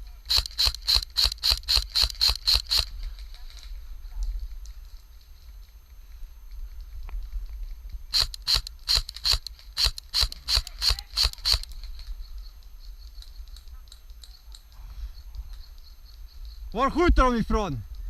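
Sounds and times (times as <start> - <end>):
airsoft gun shots: 0.3 - 2.9, 8.1 - 11.7.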